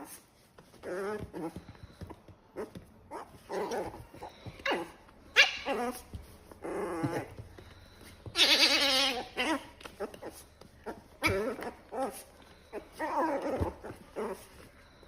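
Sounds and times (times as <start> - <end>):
dog growling: 6.6 - 7.3.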